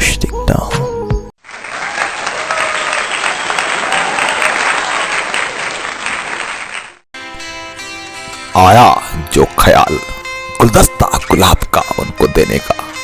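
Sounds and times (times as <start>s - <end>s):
audience applauding: 1.4s - 7.0s.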